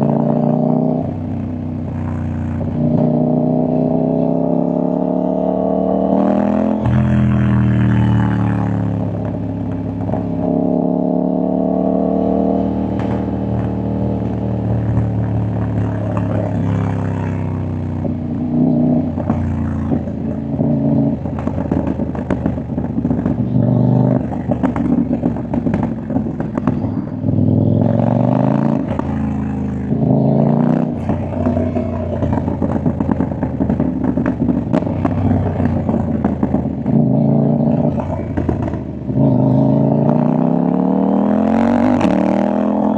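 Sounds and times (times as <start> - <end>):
motorcycle engine running: 0.0 - 42.9
exhaust pops and crackles: 12.9 - 40.2.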